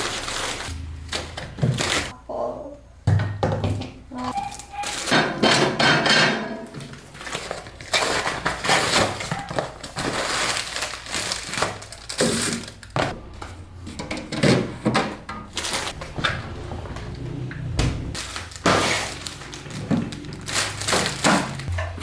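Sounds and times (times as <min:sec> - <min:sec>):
objects clattering and knocking: 0:00.0 - 0:02.2, 0:03.1 - 0:22.0
rustling: 0:15.5 - 0:22.0.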